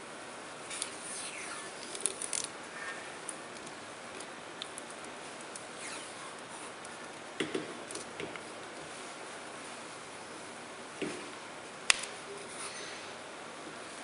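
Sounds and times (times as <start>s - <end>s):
adhesive tape crackling: 0.7s - 2.6s.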